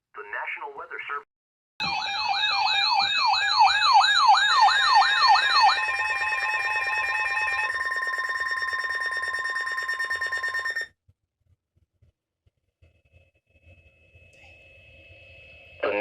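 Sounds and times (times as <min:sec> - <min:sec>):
siren-like yelp sweeping down: 0:01.8 - 0:10.8
steady two-tone alarm: 0:01.8 - 0:10.9.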